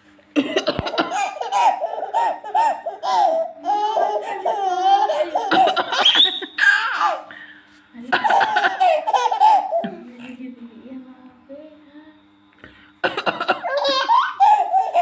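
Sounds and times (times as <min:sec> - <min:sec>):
baby laughing: 0:00.4 - 0:07.4, 0:08.2 - 0:10.0, 0:13.1 - 0:15.0.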